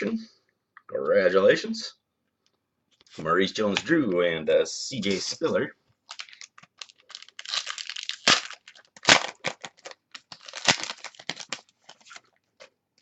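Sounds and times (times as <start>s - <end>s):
foil wrapper crinkling and tearing: 6.0s - 12.7s.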